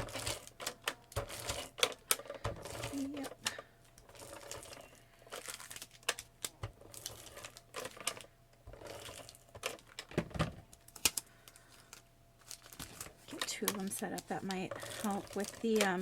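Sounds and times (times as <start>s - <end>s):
paper rustling: 10.9s - 16.0s.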